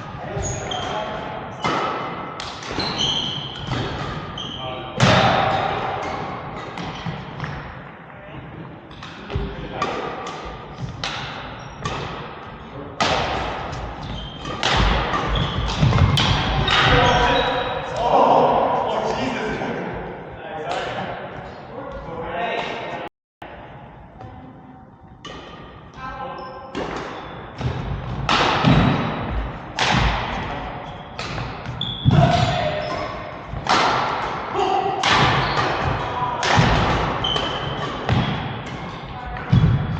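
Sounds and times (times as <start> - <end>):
shoe squeaks: 0.3 - 1.1, 2.7 - 4.8, 14.0 - 15.9, 16.6 - 17.9, 30.9 - 33.1, 37.2 - 37.9
racket striking shuttlecock: 14.4 - 16.9, 28.2 - 29.1, 29.7 - 30.5.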